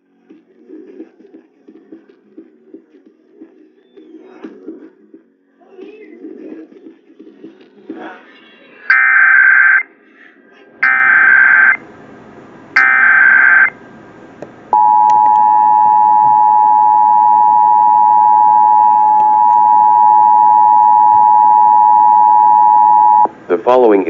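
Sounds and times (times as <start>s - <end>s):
two-tone alert drone: 8.9s - 9.8s, 10.8s - 11.8s, 12.8s - 13.7s, 14.8s - 23.3s
warbling data screech: 8.9s - 9.8s, 10.8s - 11.8s, 12.8s - 13.7s.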